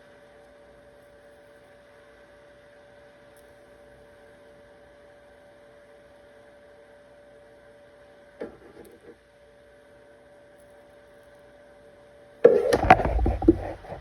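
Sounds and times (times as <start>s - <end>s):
electrical hum: 12.4s - 14.0s.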